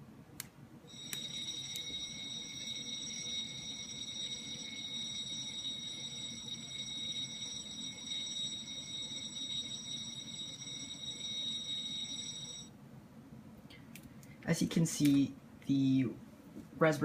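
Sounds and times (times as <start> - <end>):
high-pitched electronic alarm tone: 0.9 - 12.7.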